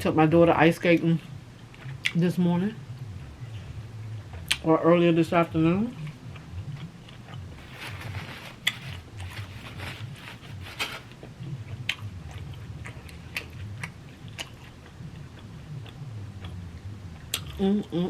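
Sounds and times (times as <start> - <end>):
person chewing food: 6.1 - 16.6
light crunches: 7.6 - 11.2.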